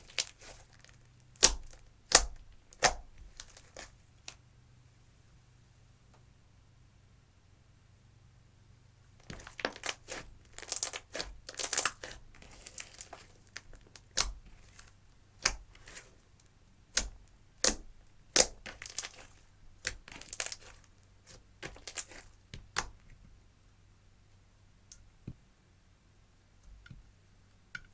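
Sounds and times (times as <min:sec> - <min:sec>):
slime crackling and popping: 0:00.0 - 0:03.9, 0:09.2 - 0:16.1, 0:16.9 - 0:23.0.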